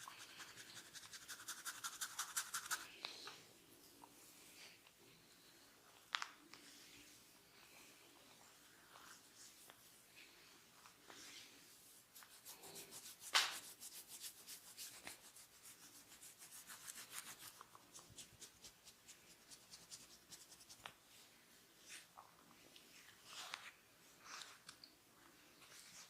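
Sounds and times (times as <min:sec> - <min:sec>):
hands scratching hair and scalp: 0:00.0 - 0:02.9, 0:11.1 - 0:21.0.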